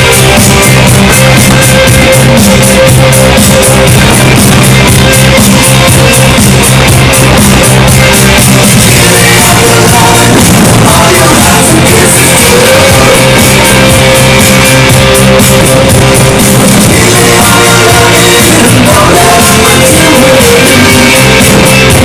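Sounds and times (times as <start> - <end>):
rock music with singing: 0.0 - 22.0.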